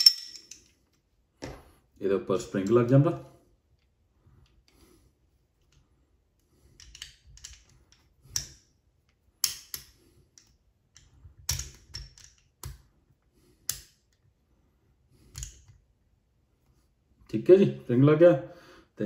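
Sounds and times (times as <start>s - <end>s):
pistol parts clicking and knocking: 0.0s - 0.8s, 6.7s - 8.7s, 9.4s - 12.9s, 13.6s - 14.2s, 15.3s - 15.8s.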